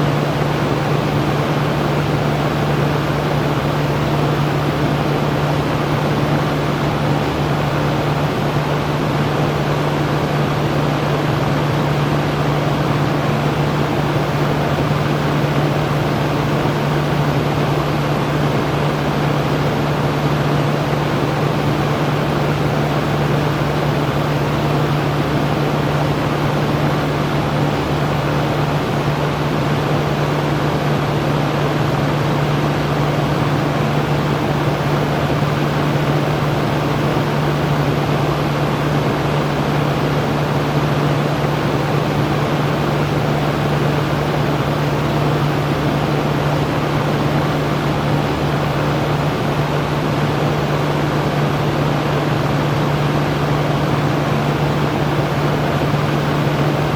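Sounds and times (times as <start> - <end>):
electric fan running: 0.0 - 56.9.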